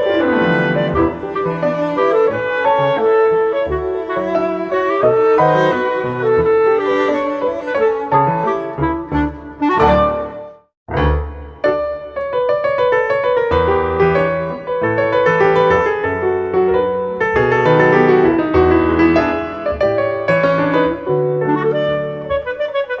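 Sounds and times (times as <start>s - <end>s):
piano music with bass: 0.0s - 23.0s.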